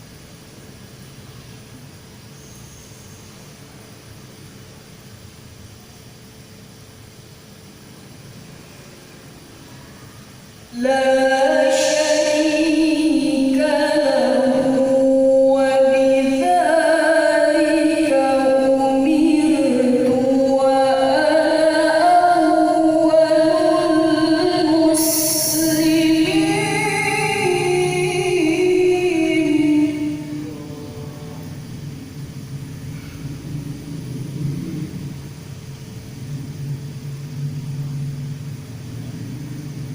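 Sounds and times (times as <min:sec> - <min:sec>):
woman reciting melodically: 0:10.7 - 0:32.2.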